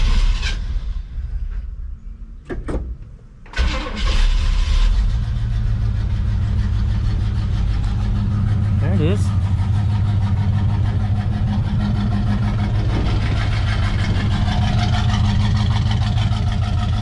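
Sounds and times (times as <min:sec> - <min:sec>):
engine cranking on starter: 0:02.5 - 0:17.0
engine revving and idling: 0:03.6 - 0:17.0.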